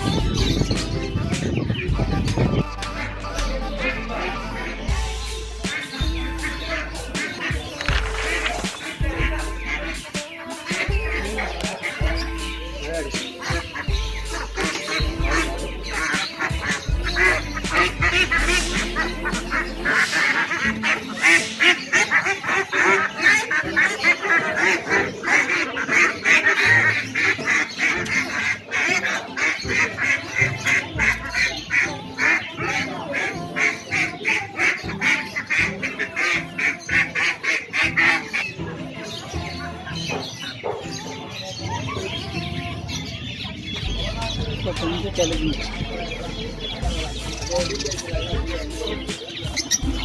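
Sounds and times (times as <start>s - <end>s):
caged birds chattering: 0.0s - 50.0s.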